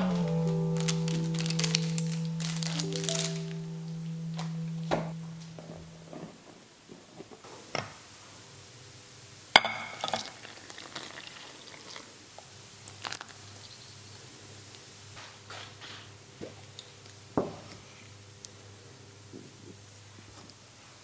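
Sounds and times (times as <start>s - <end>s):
background music: 0.0s - 6.2s.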